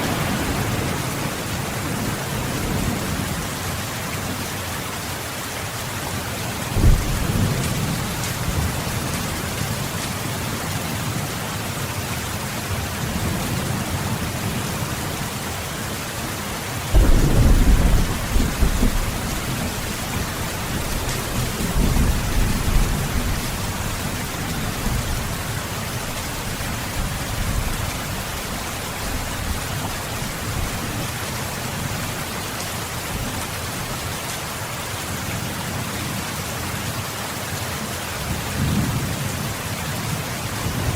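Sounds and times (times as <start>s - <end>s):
thunder rumbling: 0.0s - 3.6s, 6.7s - 9.3s, 16.9s - 25.4s
heavy rain: 0.0s - 40.9s.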